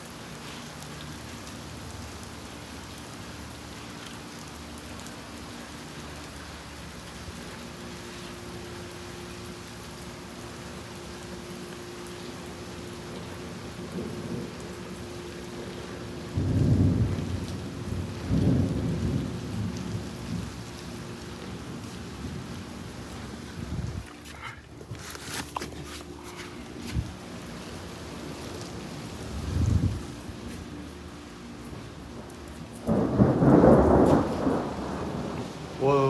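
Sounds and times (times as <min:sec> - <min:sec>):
steady rain falling: 0:00.0 - 0:36.0
thunder rumble: 0:13.0 - 0:24.1, 0:28.0 - 0:30.8, 0:31.6 - 0:36.0.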